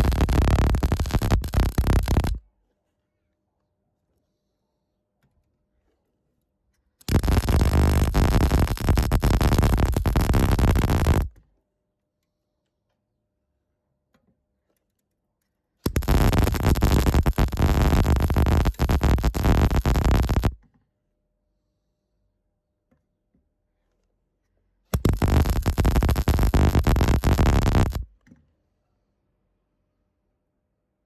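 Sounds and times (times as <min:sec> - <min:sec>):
welding arc crackling and buzzing: 0:00.0 - 0:02.4, 0:07.1 - 0:11.3, 0:15.9 - 0:20.6, 0:25.0 - 0:28.1.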